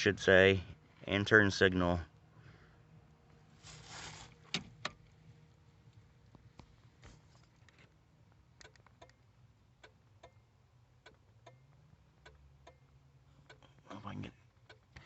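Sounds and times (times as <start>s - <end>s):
turn signal flasher clicking: 8.6s - 10.4s.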